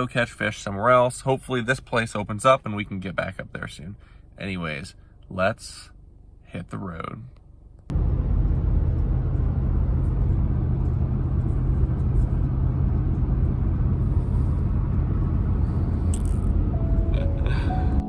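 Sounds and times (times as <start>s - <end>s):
vehicle rumble inside cabin: 7.8s - 18.0s
music: 16.7s - 18.0s.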